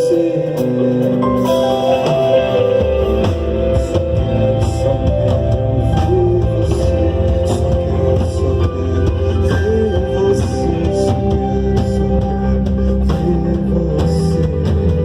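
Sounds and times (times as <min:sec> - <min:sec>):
bass guitar: 0:00.0 - 0:15.0
drums: 0:00.0 - 0:15.0
electric guitar: 0:00.0 - 0:15.0
keyboard notes: 0:00.0 - 0:15.0.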